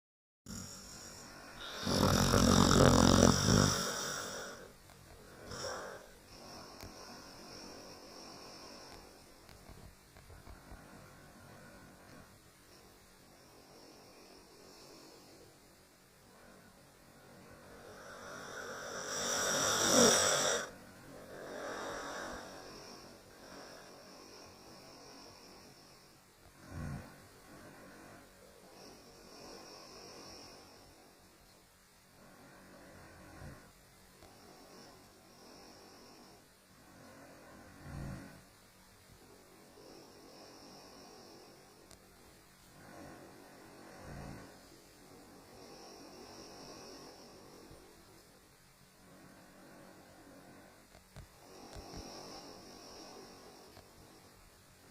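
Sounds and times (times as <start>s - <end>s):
dog snoring: 0.5s - 9.2s, 17.4s - 31.0s, 32.4s - 38.5s, 51.4s - 54.2s.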